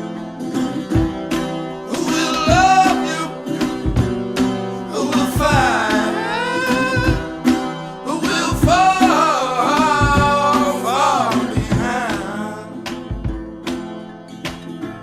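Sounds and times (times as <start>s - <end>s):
strummed acoustic guitar: 0.0s - 15.0s
sharp beat: 0.9s - 13.9s
person singing wavering notes: 4.9s - 7.2s.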